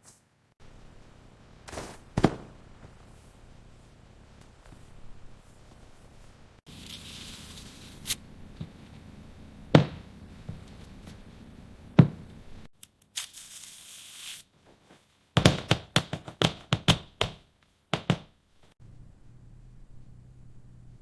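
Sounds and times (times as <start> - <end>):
faint low hum: 2.4 - 12.7, 18.8 - 21.0
short hiss: 6.7 - 14.5.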